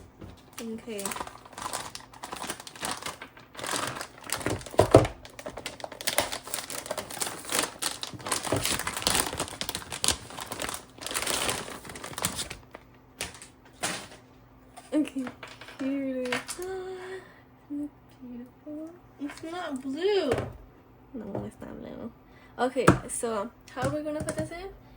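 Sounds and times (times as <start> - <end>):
packaging crinkling and rustling: 0.2 - 14.2.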